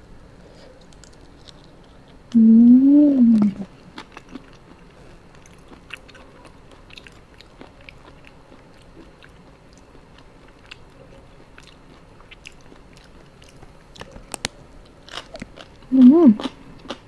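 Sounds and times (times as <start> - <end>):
mouth clicks: 2.3 - 3.7
person chewing food: 3.3 - 17.0.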